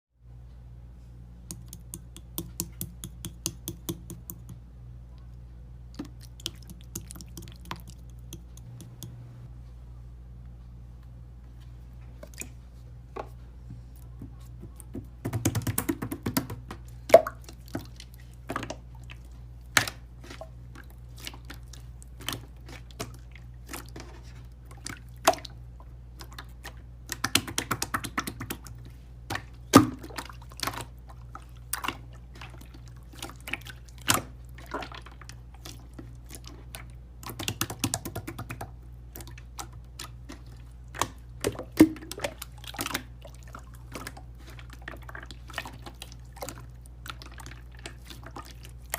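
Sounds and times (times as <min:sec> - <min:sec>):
steady low hum: 0:00.2 - 0:48.9.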